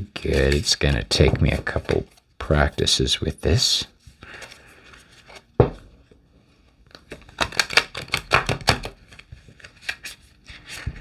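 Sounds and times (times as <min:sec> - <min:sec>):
cards being shuffled: 0:00.0 - 0:03.0, 0:07.0 - 0:11.0.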